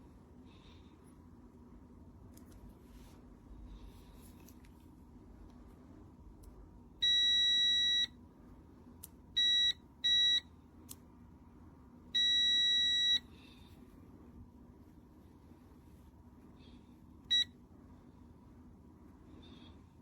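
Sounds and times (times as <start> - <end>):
multimeter high-pitched beeps: 7.0 - 8.2, 9.4 - 10.5, 12.2 - 13.3.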